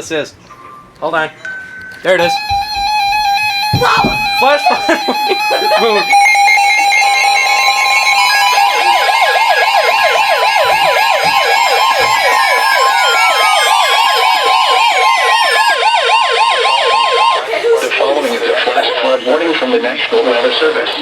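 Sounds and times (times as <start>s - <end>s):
higher steady tone: 1.4s - 17.7s
steady alert tones: 1.4s - 21.0s
yelping siren-like alarm sweep: 2.1s - 20.6s.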